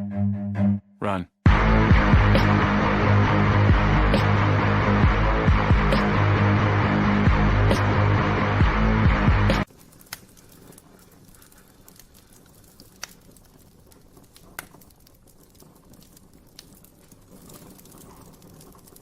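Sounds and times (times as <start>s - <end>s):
music: 0.0s - 9.7s.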